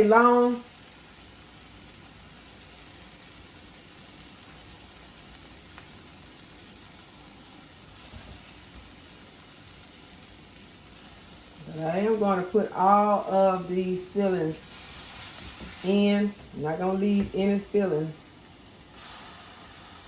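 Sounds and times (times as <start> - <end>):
pan sizzling: 0.0 - 20.0.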